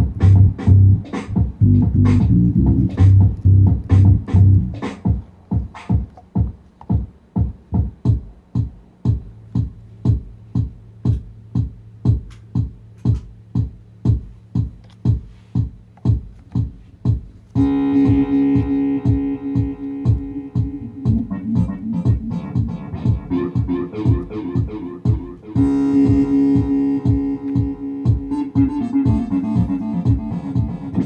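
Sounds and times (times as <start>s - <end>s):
electronic drum beat: 0.0s - 31.0s
low held bass note: 17.6s - 29.9s
sustained synthesizer chord: 17.6s - 31.0s.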